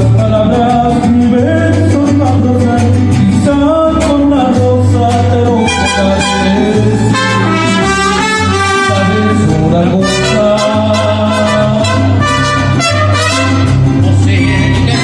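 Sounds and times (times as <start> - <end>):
mariachi band playing: 0.0 - 15.0
walking bass line: 0.0 - 15.0
trumpets playing melody: 5.6 - 14.0.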